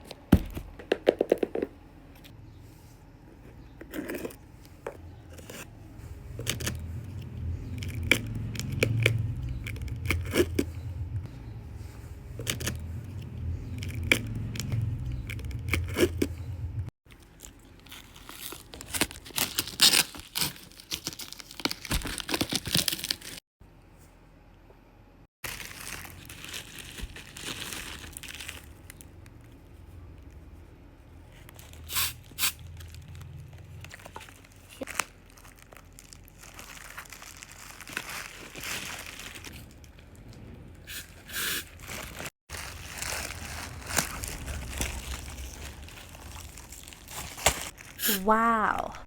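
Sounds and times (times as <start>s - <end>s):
low hum: 4.5s - 16.9s, 42.6s - 47.9s
packaging tearing and crinkling: 17.2s - 23.4s, 25.4s - 29.1s, 31.5s - 40.0s, 40.9s - 48.1s.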